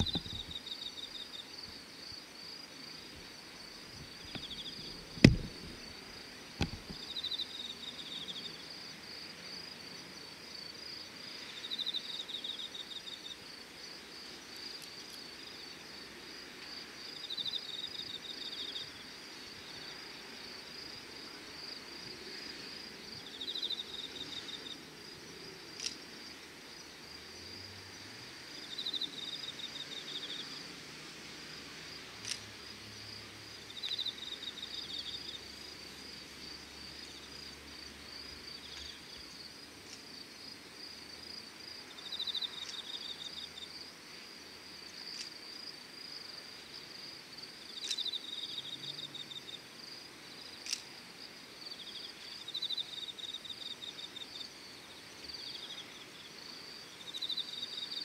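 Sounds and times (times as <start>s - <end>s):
insect pulsed chirps: 0.0s - 2.2s
insect high pulsing trill: 0.0s - 9.2s.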